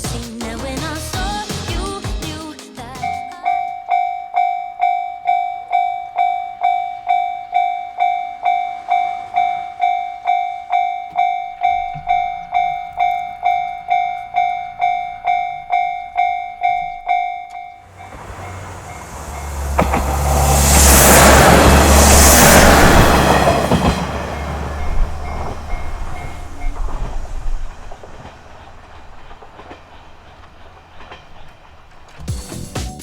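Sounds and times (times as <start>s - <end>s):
level crossing bell clanging: 2.8s - 19.5s
diesel train rumble: 5.6s - 33.0s.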